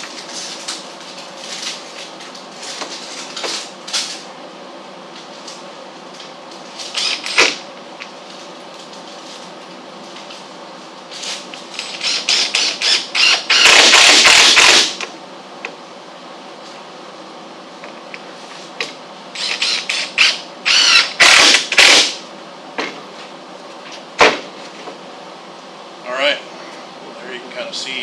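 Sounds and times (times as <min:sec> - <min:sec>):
power drill: 0:07.0 - 0:07.6, 0:11.8 - 0:15.0, 0:19.4 - 0:22.2.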